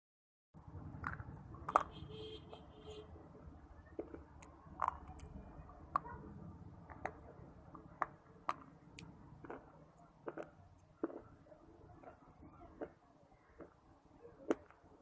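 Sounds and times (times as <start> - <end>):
crunchy chewing: 6.9 - 13.0
wet mouth sounds: 8.5 - 11.4.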